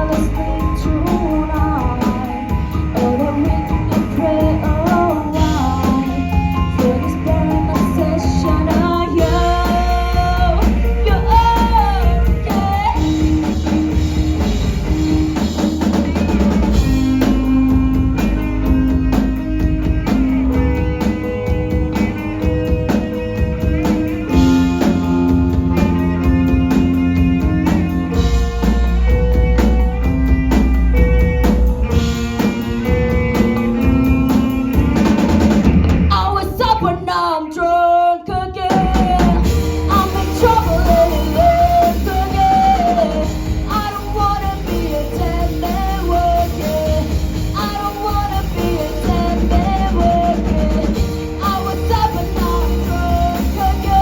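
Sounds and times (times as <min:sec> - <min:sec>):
drum kit: 0:00.0 - 0:37.3, 0:38.3 - 0:54.0
keyboard: 0:00.0 - 0:37.6, 0:38.2 - 0:54.0
bass guitar: 0:00.0 - 0:54.0
electric guitar: 0:00.0 - 0:54.0
lead vocal singing: 0:36.1 - 0:54.0.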